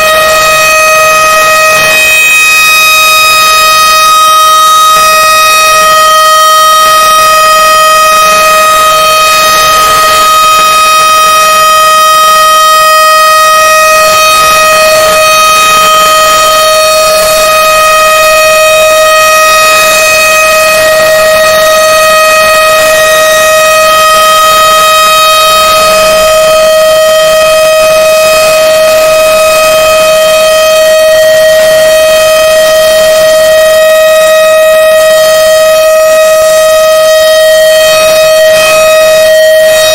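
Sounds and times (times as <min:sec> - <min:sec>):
buzzy alert alarm tone: 0:00.0 - 0:27.3.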